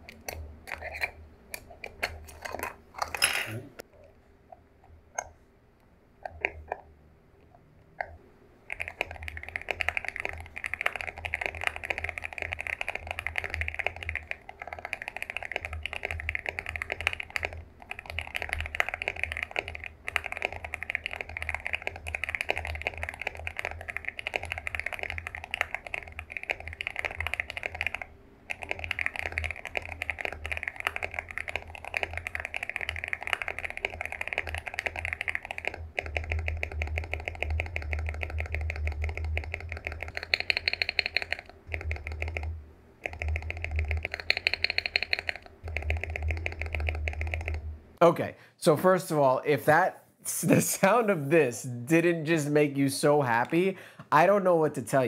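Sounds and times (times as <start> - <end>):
mechanical keyboard key clicks: 8.7 - 42.4, 43.0 - 47.5.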